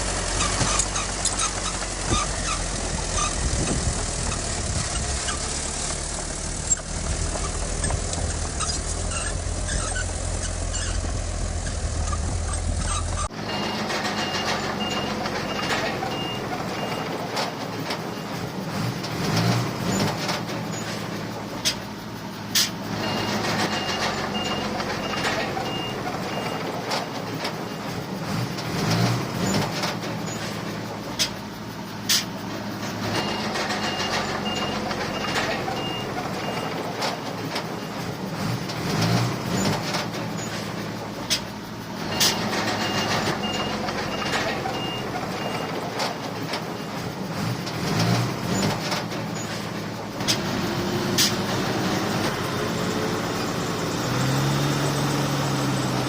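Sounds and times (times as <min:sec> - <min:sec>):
diesel machinery running: 0:00.0 - 0:56.0
reversing alarm beeping: 0:12.8 - 0:17.2, 0:22.9 - 0:26.7, 0:33.2 - 0:36.8, 0:42.0 - 0:45.8.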